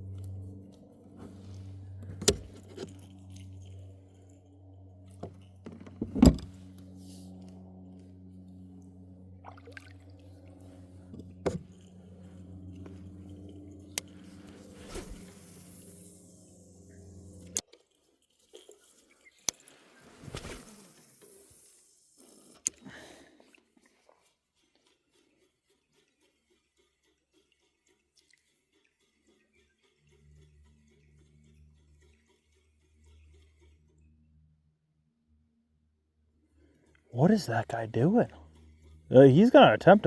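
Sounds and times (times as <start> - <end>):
motor humming: 0.0 - 17.6.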